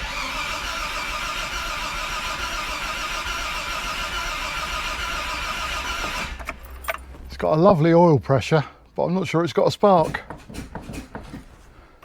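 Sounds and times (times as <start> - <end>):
starter motor cranking engine: 0.0 - 7.3.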